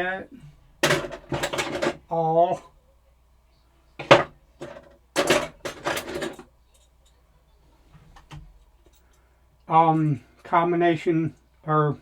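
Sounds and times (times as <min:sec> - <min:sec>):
metal tools clinking and clattering: 0:00.8 - 0:02.0, 0:04.0 - 0:06.9.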